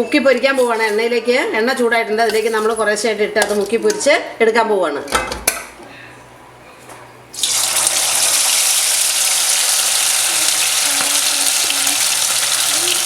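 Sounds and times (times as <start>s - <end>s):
chicken sizzling in hot oil: 7.4s - 13.0s.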